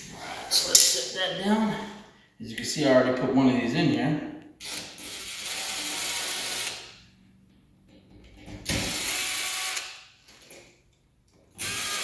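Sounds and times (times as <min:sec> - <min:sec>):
cordless drill running: 0:11.6 - 0:12.0.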